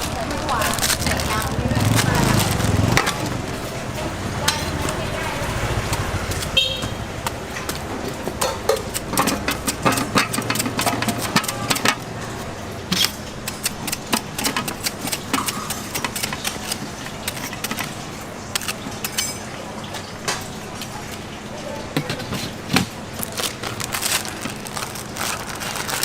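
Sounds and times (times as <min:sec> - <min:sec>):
steady background hum: 0:00.0 - 0:26.0.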